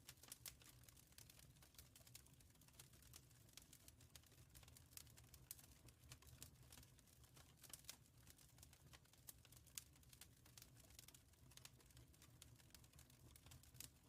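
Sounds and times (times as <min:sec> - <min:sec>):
wood fire crackling: 0:00.0 - 0:14.0.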